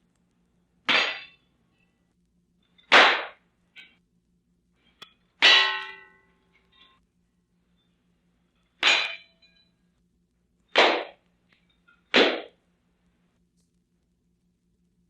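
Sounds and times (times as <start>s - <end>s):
metallic ring: 0.9s - 2.0s, 4.8s - 7.0s, 7.7s - 10.0s.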